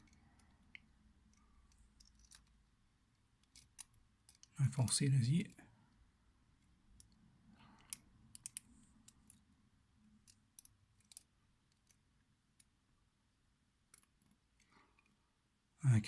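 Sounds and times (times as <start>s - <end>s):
faint metallic lock pick clicks: 0.0s - 4.6s, 6.6s - 9.5s, 10.2s - 12.0s, 13.9s - 15.2s.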